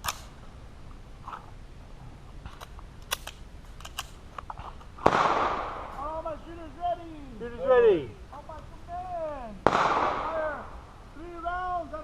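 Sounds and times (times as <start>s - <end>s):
guns clicking being loaded: 0.0s - 0.3s, 2.5s - 4.5s.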